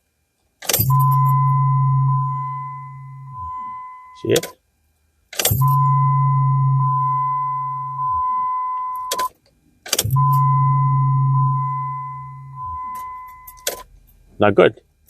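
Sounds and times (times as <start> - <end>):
fuel pump humming: 0.8 - 4.2, 5.4 - 9.3, 9.9 - 13.8
steady high tone: 0.8 - 4.3, 5.5 - 9.3, 10.0 - 13.7.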